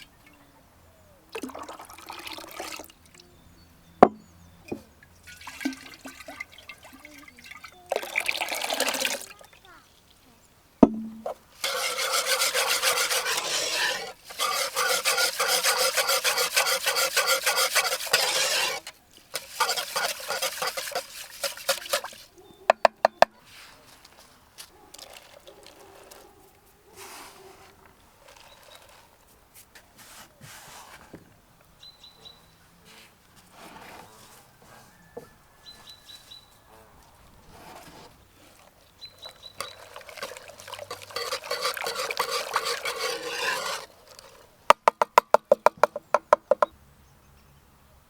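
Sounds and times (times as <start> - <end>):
sharp knocks: 10.8 - 11.4
utensil scraping and stirring: 11.6 - 22.4, 25.0 - 26.3, 37.5 - 45.9.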